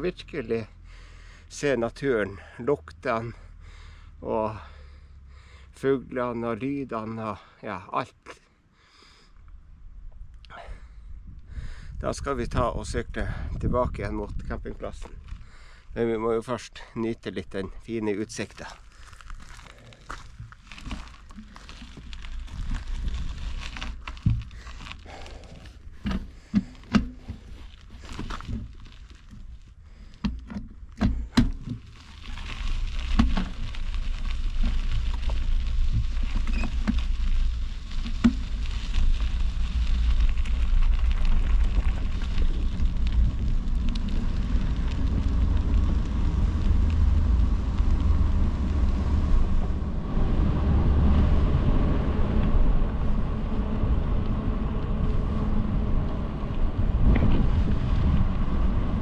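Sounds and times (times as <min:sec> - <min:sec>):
wind rumble on microphone: 0:09.7 - 0:16.4, 0:19.5 - 0:59.0
rolling tyre noise: 0:17.9 - 0:59.0.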